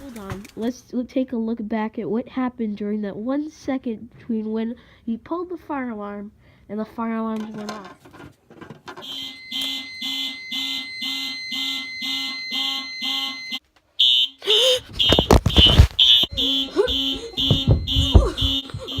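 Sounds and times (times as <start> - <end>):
steady high alarm beep: 9.0 - 14.4, 15.0 - 19.0
fire alarm horns pulsing: 9.0 - 19.0
heavy knocks and rumbling: 17.4 - 18.6.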